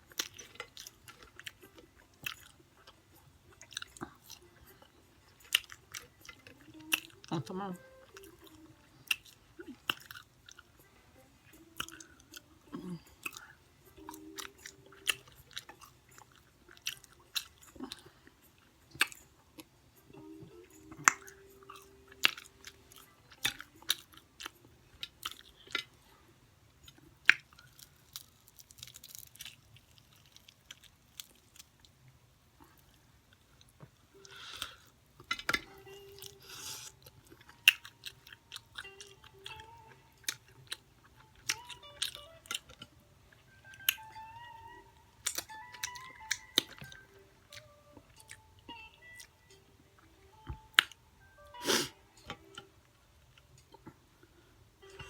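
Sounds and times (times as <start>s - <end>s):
chewing crunchy fried chicken: 0.1s - 7.4s, 8.1s - 10.7s, 11.8s - 19.7s, 26.8s - 32.0s, 35.6s - 42.9s.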